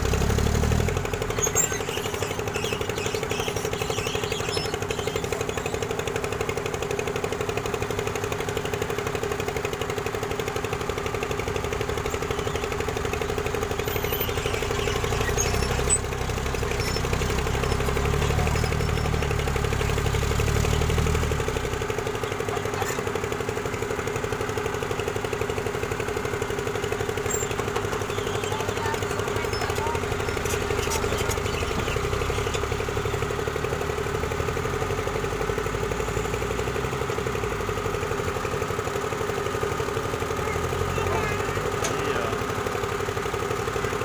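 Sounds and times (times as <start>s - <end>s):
diesel engine running: 0.0s - 44.0s.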